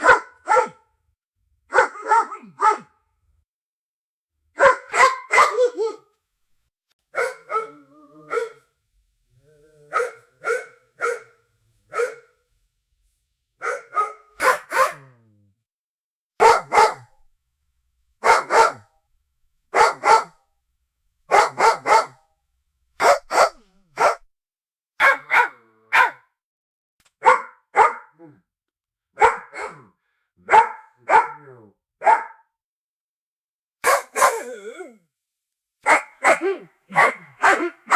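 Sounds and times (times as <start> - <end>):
dog barking: 0.0 - 0.9, 1.7 - 3.0, 4.6 - 6.0, 7.1 - 8.7, 9.8 - 12.4, 13.6 - 15.2, 16.4 - 17.2, 18.2 - 19.0, 19.7 - 20.4, 21.3 - 22.2, 23.0 - 24.3, 25.0 - 26.3, 27.2 - 28.4, 29.2 - 32.5, 33.8 - 34.7, 35.8 - 37.9.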